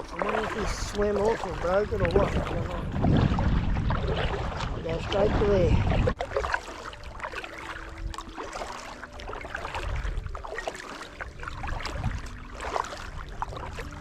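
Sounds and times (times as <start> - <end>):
low rumble: 0.0 - 6.2
paddle splashing water: 0.0 - 14.0
water trickling: 0.0 - 14.0.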